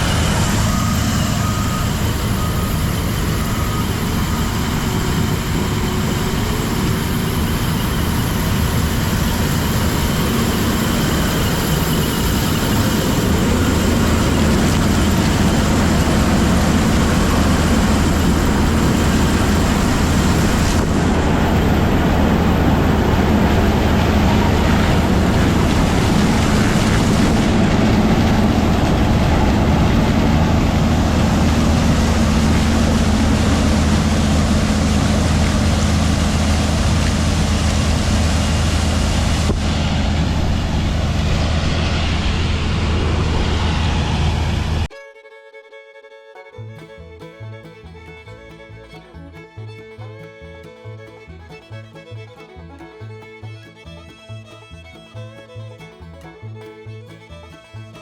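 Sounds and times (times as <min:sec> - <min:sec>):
heavy diesel machinery running: 0:00.0 - 0:44.9, 0:46.5 - 0:58.0.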